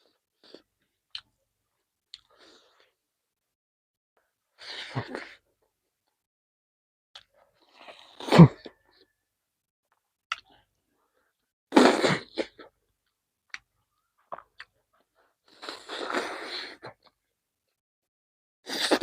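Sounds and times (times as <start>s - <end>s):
person chewing mouth noises: 2.1s - 2.9s, 13.5s - 17.2s.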